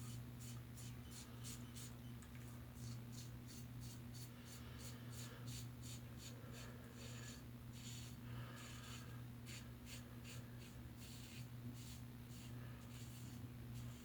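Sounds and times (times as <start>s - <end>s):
faint steady hum: 0.0s - 14.0s
razor scraping stubble: 7.0s - 14.0s.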